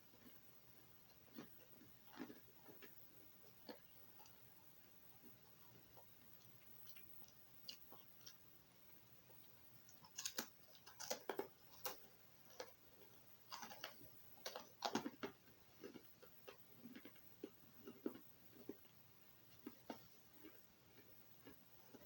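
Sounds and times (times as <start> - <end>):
pretzel crunching: 9.9 - 17.2.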